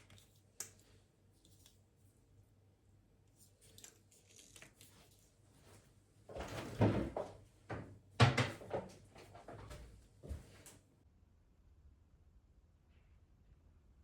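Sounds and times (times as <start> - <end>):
household knocks and clatters: 6.3 - 9.9.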